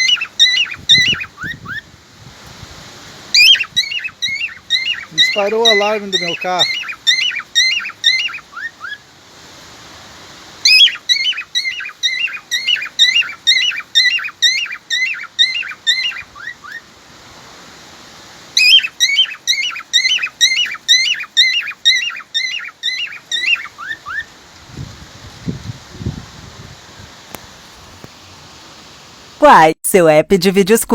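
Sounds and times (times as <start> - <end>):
cockatiel whistling short chirps: 3.4 - 5.0.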